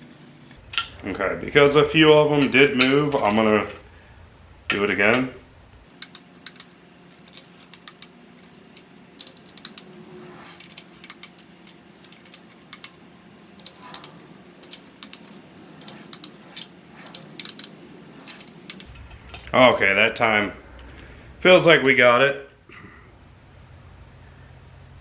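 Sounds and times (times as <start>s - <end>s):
ratchet wrench clicking: 5.9s - 18.9s.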